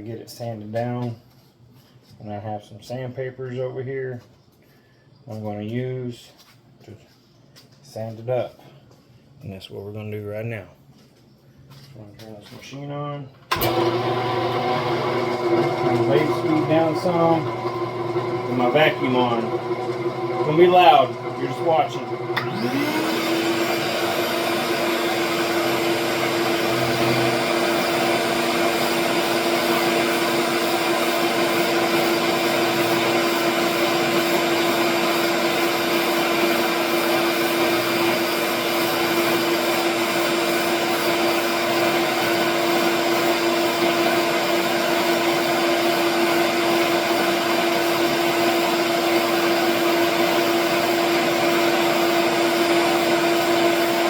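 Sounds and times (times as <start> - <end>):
shop vacuum running: 12.6 - 54.0.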